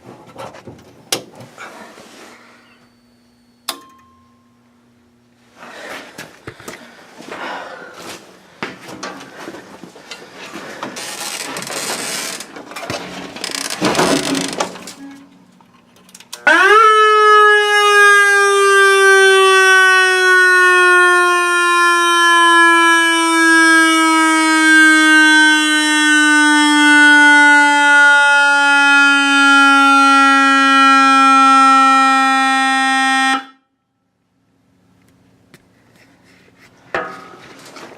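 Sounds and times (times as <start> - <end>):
rustling and handling noise: 5.4 - 16.3, 35.6 - 37.9
electronic siren tone: 16.4 - 33.6.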